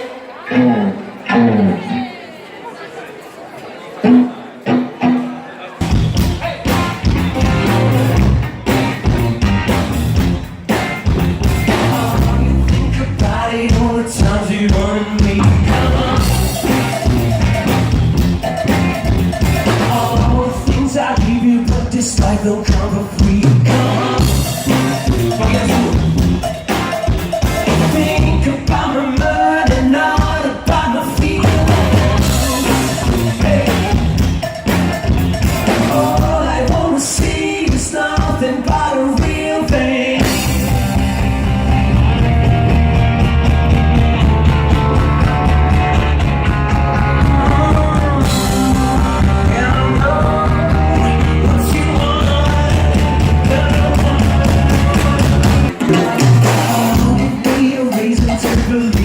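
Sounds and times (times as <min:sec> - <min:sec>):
rock band playing: 0:04.0 - 0:59.0
low bass: 0:05.8 - 0:13.4, 0:15.4 - 0:20.8, 0:23.3 - 0:28.6, 0:31.2 - 0:36.9, 0:40.2 - 0:57.4
person singing: 0:11.4 - 0:42.4, 0:46.6 - 0:59.0.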